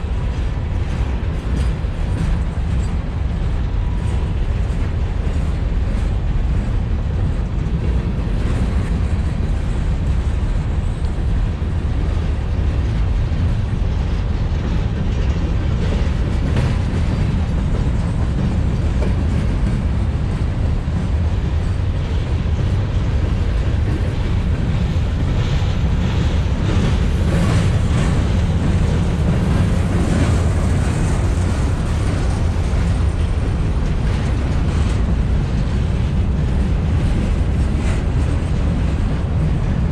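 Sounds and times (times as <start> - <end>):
freight train cars rumbling: 0.0 - 39.9
wheels and couplings clacking: 0.0 - 39.9.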